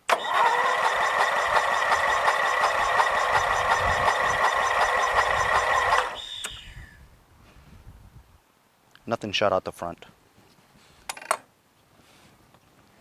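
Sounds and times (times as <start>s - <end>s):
electric starter cranking engine: 0.0s - 6.7s.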